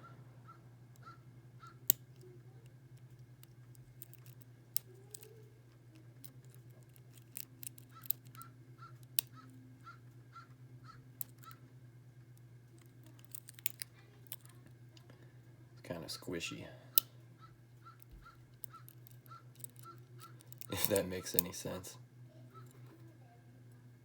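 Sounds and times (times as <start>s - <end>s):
steady low hum: 0.0s - 24.0s
lock pick clicking on pins: 2.9s - 9.5s, 11.2s - 11.6s, 12.8s - 14.6s, 17.9s - 21.6s.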